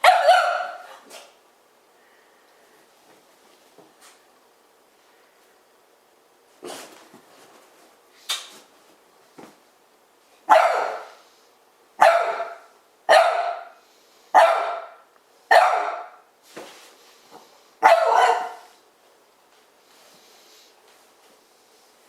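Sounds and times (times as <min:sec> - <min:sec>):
dog barking: 0:00.0 - 0:01.3, 0:10.5 - 0:11.2, 0:12.0 - 0:13.8, 0:14.4 - 0:16.2, 0:17.8 - 0:18.7.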